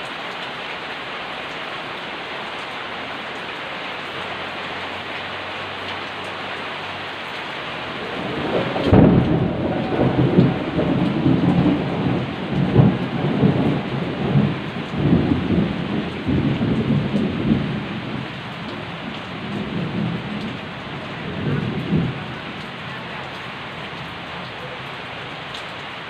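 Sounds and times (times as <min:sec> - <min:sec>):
rain falling: 0:00.0 - 0:26.0
rumbling thunder: 0:07.9 - 0:24.2.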